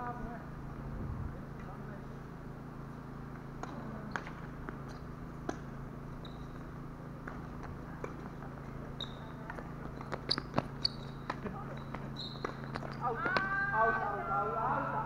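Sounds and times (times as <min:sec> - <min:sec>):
steady low hum: 0:00.0 - 0:15.0
tennis balls bouncing and struck: 0:03.3 - 0:13.6
high squeaks: 0:09.0 - 0:13.8.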